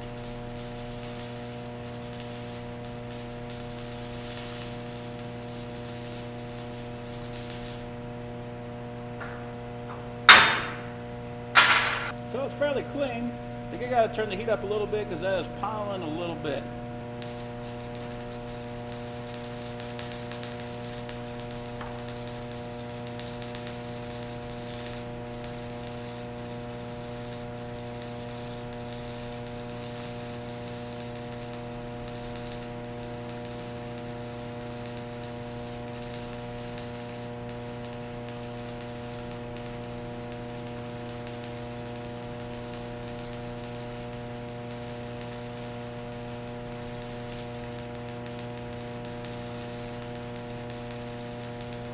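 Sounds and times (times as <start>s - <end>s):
welding arc crackling and popping: 0.0s - 8.2s, 9.0s - 12.2s, 17.1s - 51.9s
electrical hum: 0.0s - 25.4s.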